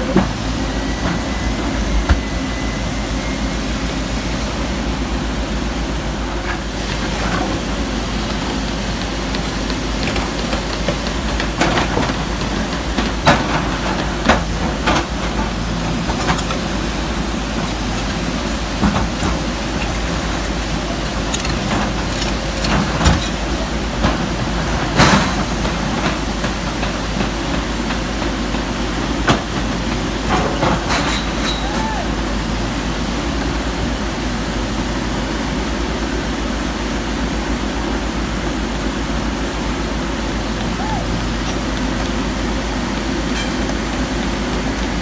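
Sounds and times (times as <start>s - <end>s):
excavator diesel engine running: 0.0s - 45.0s
sharp knocks and clanks: 2.0s - 2.5s.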